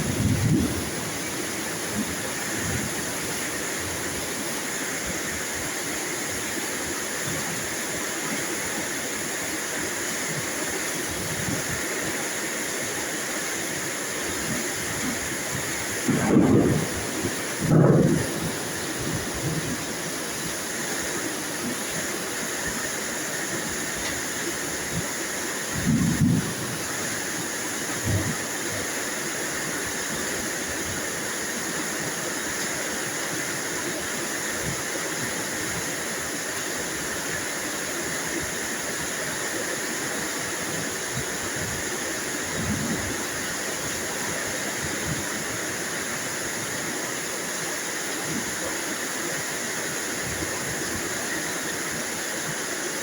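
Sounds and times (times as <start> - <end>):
steady rain falling: 0.0 - 53.0.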